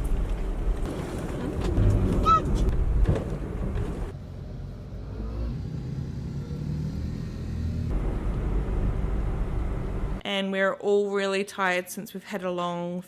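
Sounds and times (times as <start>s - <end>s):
road vehicle rumbling: 0.0s - 10.2s.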